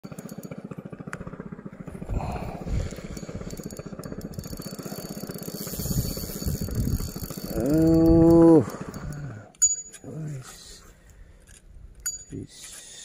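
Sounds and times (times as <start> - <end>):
small engine running: 0.0 - 9.6.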